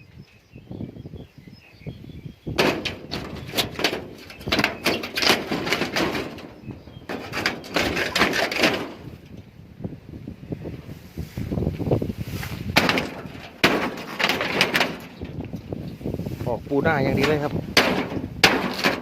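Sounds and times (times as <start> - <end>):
clattering and banging: 2.6 - 9.5, 12.4 - 19.0.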